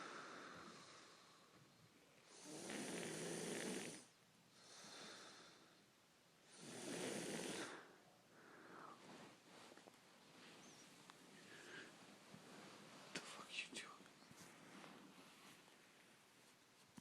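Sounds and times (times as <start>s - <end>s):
man snoring: 2.3s - 5.5s, 6.5s - 7.9s
soft breath out: 7.5s - 13.1s.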